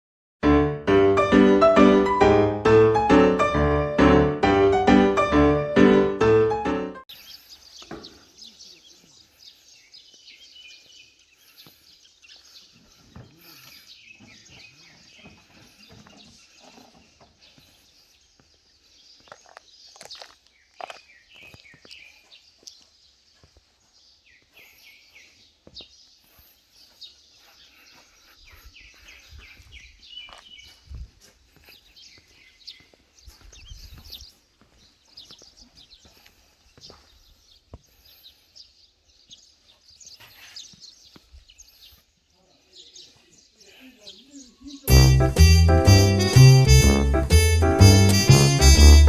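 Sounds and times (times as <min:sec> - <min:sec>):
faint outdoor background noise: 0:07.1 - 0:44.9
birds chirping: 0:07.1 - 0:49.0.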